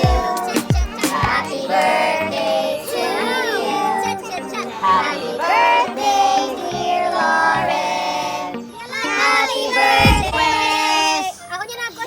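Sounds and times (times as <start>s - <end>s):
music with childlike singing: 0.0s - 11.8s
low thump: 10.0s - 10.8s.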